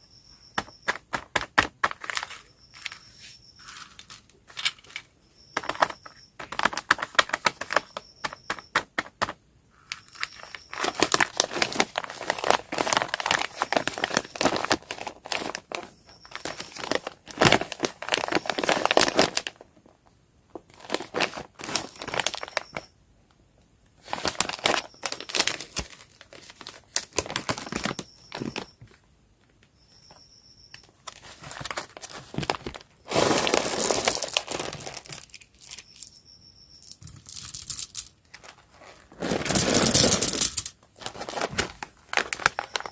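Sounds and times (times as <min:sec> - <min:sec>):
plastic wrappers crinkling: 0:05.6 - 0:08.0, 0:09.9 - 0:19.6, 0:20.6 - 0:22.8, 0:24.0 - 0:28.9, 0:31.0 - 0:36.1, 0:36.8 - 0:42.9.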